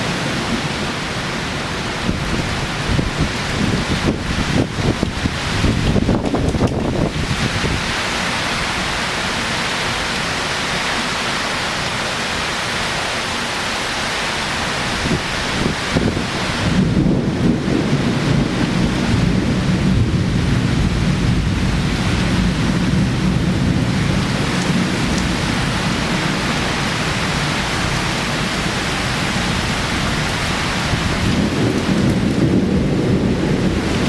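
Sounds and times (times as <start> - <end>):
heavy rain pouring: 0.0 - 34.0.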